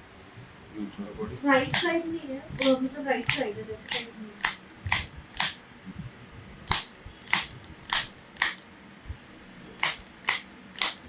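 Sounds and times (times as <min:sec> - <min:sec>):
sharp clicks: 0:01.7 - 0:05.6, 0:06.7 - 0:08.7, 0:09.8 - 0:11.0.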